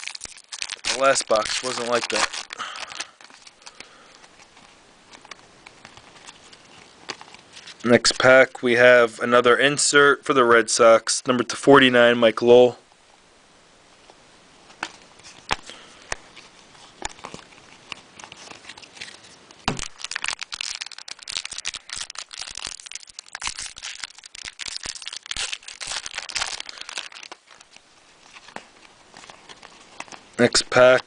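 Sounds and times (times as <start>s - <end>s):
wrapper tearing and crinkling: 0.0s - 8.2s, 15.2s - 31.0s.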